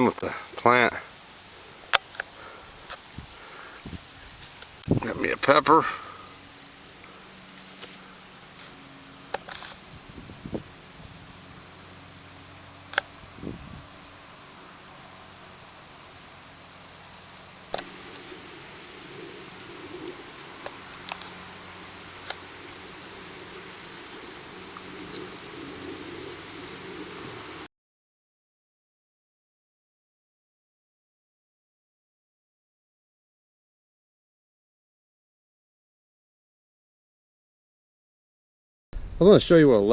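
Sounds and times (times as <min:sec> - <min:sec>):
crickets and insects trilling: 0:00.0 - 0:27.7
pulsing insect chirp: 0:00.0 - 0:27.7
handling clicks and rustles: 0:01.9 - 0:05.8, 0:07.0 - 0:09.9.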